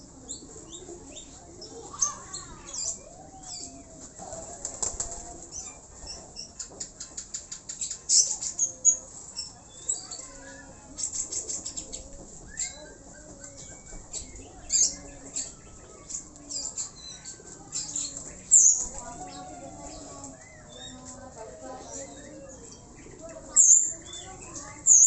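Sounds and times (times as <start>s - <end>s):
birds chirping: 0.0s - 25.0s
pigeon wings flapping: 4.4s - 5.5s.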